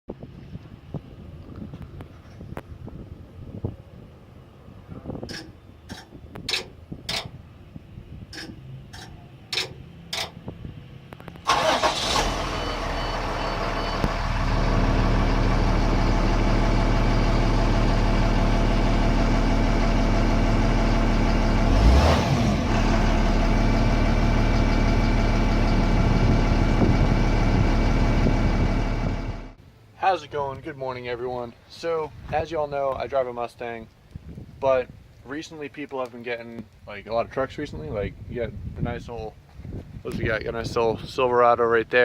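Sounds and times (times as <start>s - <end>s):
car engine starting and idling: 8.2s - 29.6s
sharp clicks: 8.3s - 10.4s.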